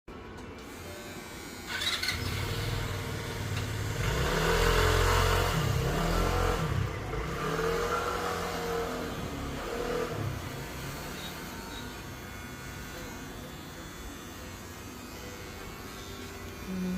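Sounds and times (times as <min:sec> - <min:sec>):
electric hair clippers humming: 0:00.6 - 0:16.9.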